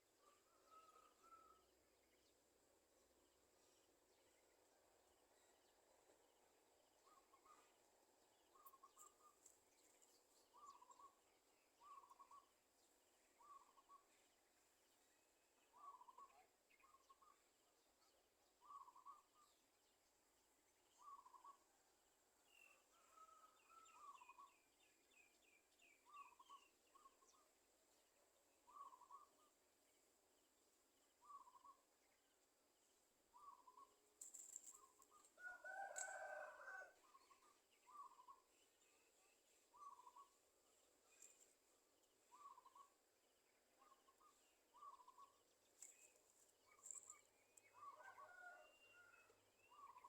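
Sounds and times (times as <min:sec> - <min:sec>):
faint birdsong: 0:00.0 - 0:50.0
rooster crowing: 0:35.4 - 0:37.0, 0:47.9 - 0:49.4.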